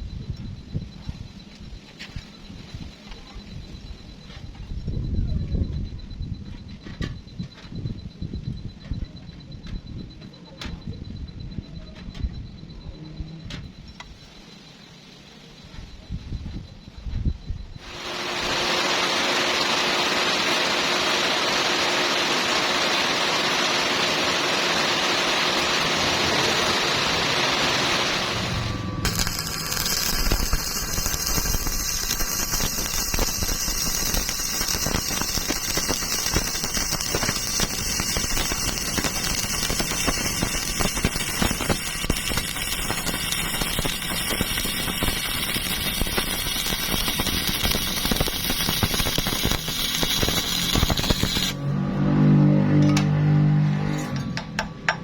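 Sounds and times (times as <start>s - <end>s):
welding arc crackling: 17.8s - 51.6s
welding arc hissing: 17.8s - 51.6s.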